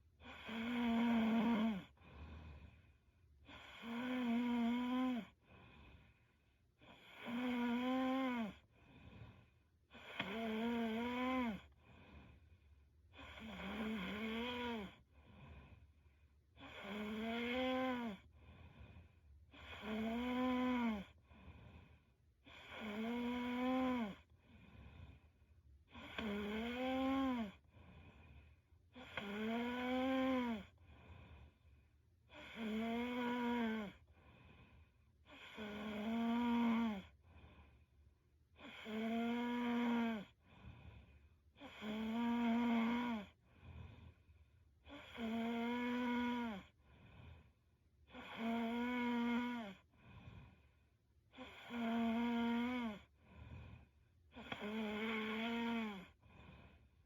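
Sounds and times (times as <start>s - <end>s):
faint breaths: 0.0s - 4.2s, 5.0s - 7.4s, 8.1s - 19.9s, 21.0s - 23.0s, 23.6s - 32.6s, 33.8s - 35.7s, 36.5s - 39.0s, 39.6s - 41.8s, 43.0s - 45.2s, 46.5s - 48.4s, 49.6s - 51.8s, 52.7s - 57.0s
woman snoring: 0.2s - 6.2s, 6.8s - 12.4s, 13.1s - 15.9s, 16.5s - 25.3s, 25.9s - 37.8s, 38.5s - 57.0s.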